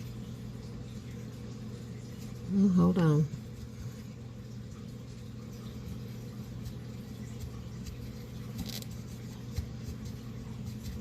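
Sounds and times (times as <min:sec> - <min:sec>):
steady low hum: 0:00.0 - 0:11.0
spackle scraping and squishing: 0:05.7 - 0:11.0.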